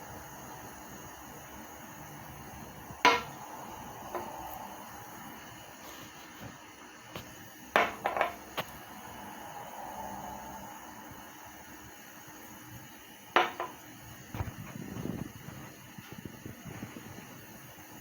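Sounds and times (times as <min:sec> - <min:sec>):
utensils knocking against cookware: 0:03.1 - 0:03.4, 0:07.8 - 0:08.4, 0:13.4 - 0:13.8.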